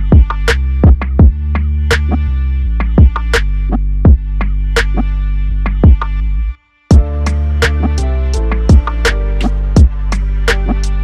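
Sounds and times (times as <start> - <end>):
electronic drum machine music: 6.9 - 11.0.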